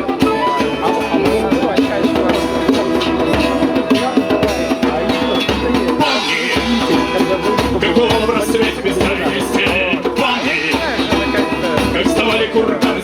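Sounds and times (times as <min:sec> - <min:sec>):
drum beat: 0:00.0 - 0:13.0
live band playing: 0:00.0 - 0:13.0.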